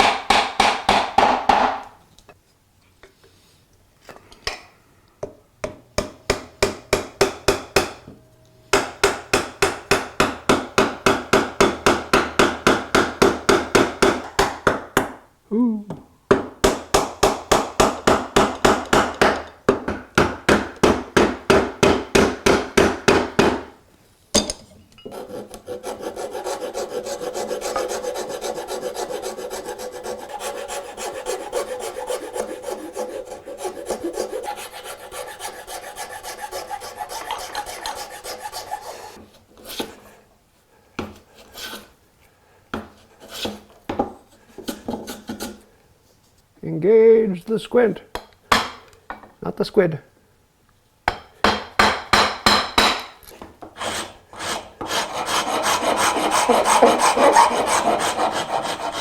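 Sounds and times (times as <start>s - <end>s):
rasp scraping wood: 25.1s - 40.0s, 53.7s - 59.0s.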